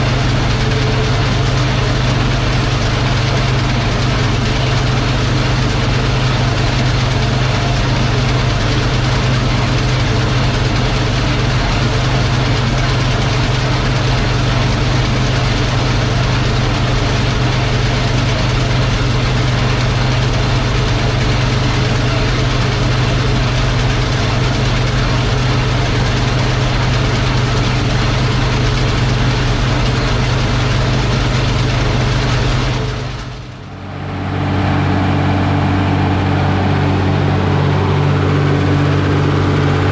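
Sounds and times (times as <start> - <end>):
combine harvester droning: 0.0 - 39.9.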